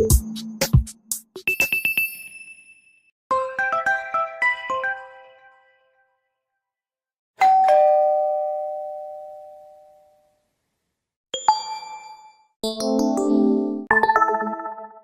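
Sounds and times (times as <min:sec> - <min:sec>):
phone ding-dong chime: 0:07.4 - 0:10.2, 0:11.4 - 0:12.5.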